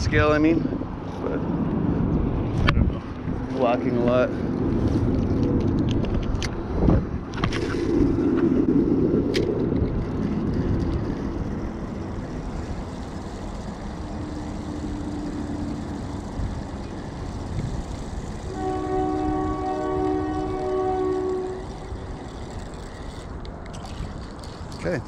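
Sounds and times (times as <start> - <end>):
low outdoor rumble: 0.0 - 25.0
train horn chord: 18.5 - 21.7.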